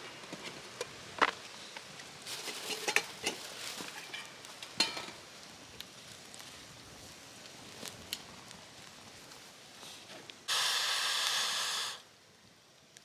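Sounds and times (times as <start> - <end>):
light sizzling: 0.1 - 13.0
metal utensils clinking on cookware: 2.3 - 5.2.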